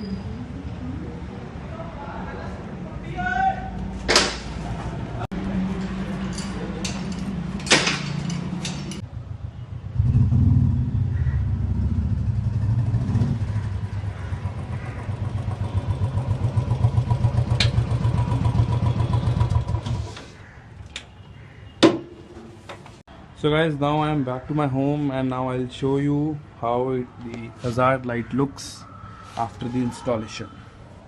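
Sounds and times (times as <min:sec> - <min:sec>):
motorcycle engine running: 0:09.1 - 0:19.8.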